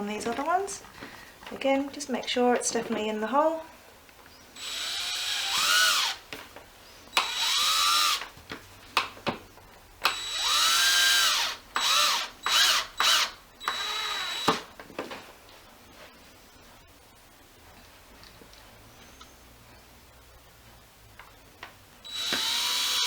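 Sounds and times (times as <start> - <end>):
power drill driving a screw: 4.6 - 6.2, 7.2 - 8.3, 10.0 - 14.6, 22.0 - 23.0.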